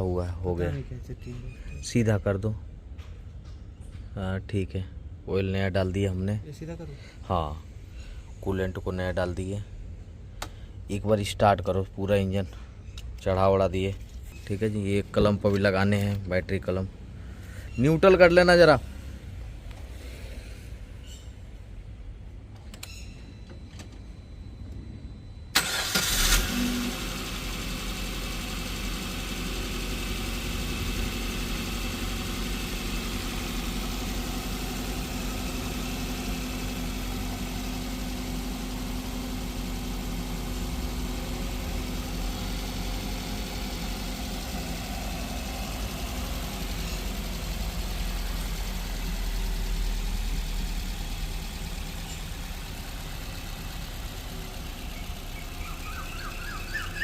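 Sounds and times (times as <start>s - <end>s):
car engine cranking and idling: 12.5s - 24.9s, 25.5s - 57.0s.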